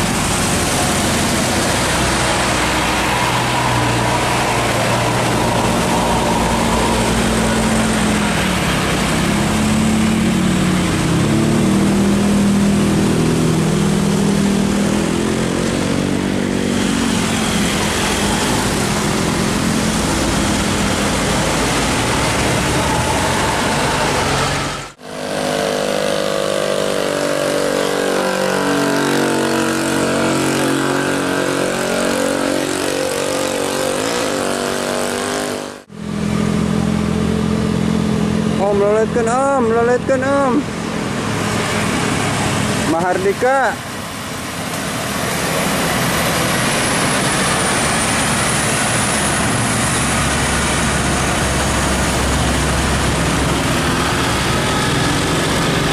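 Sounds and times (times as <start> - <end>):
bus engine running: 0.0 - 55.9
multi-tone horns playing melody: 25.0 - 35.9.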